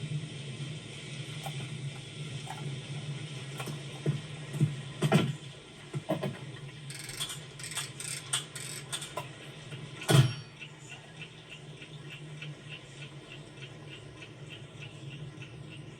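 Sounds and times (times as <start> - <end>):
sharp clicks and knocks: 6.0 - 9.4
faint ticking: 10.4 - 15.9.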